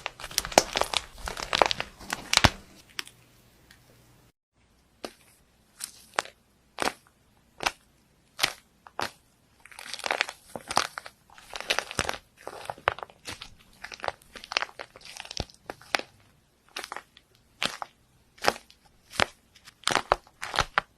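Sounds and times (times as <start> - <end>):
crisp material crunching: 0.0 - 3.1, 8.4 - 20.9.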